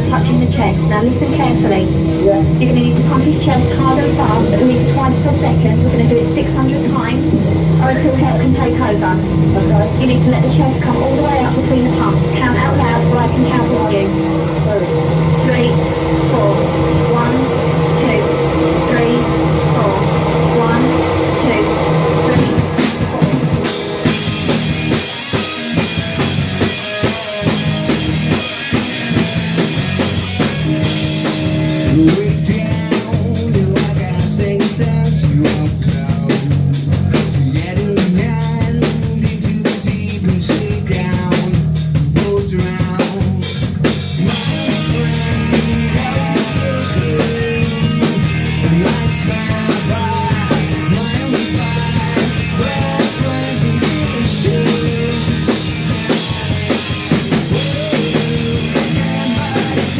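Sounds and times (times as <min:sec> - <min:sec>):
punk rock band playing: 0:00.0 - 0:59.9
fast drum hits: 0:21.5 - 0:59.9.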